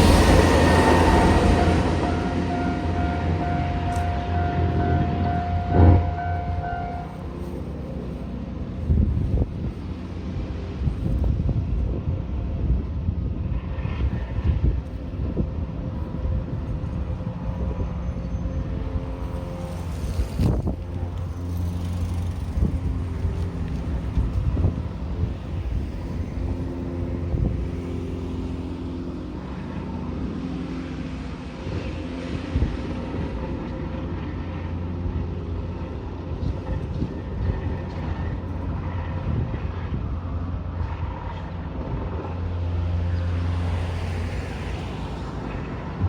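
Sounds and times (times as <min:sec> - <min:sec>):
wind buffeting microphone: 0:00.0 - 0:30.5, 0:31.5 - 0:46.0
vehicles passing: 0:00.0 - 0:46.0.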